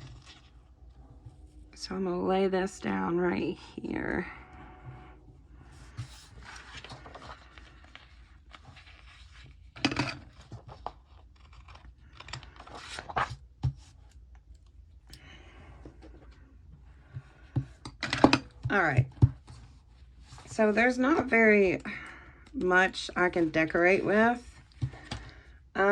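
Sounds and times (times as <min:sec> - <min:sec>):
paper rustling and scratching: 0:00.0 - 0:01.6, 0:05.8 - 0:14.2
paper crinkles and taps: 0:06.4 - 0:14.0.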